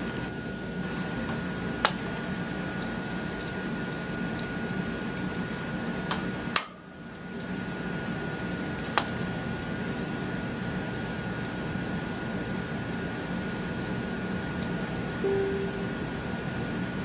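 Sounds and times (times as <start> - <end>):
fan-like hum: 0.0 - 17.0.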